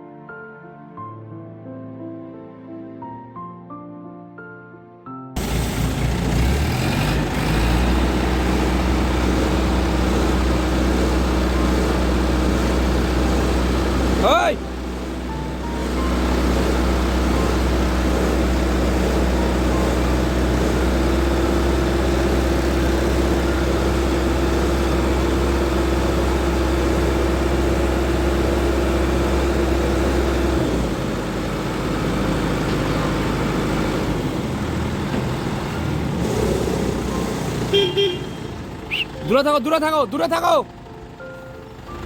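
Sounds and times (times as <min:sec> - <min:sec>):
steady mechanical whine: 0:05.4 - 0:35.2
diesel engine running under load: 0:05.4 - 0:42.0.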